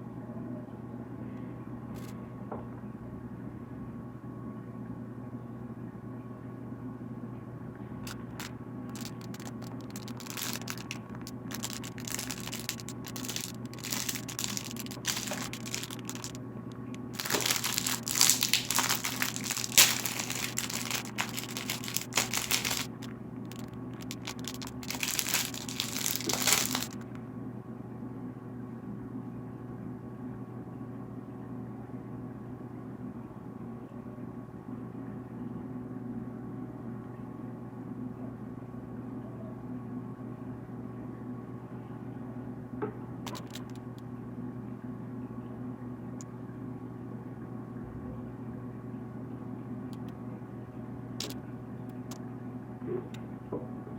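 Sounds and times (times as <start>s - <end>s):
plastic packaging crinkling: 8.1s - 27.2s, 43.3s - 43.8s.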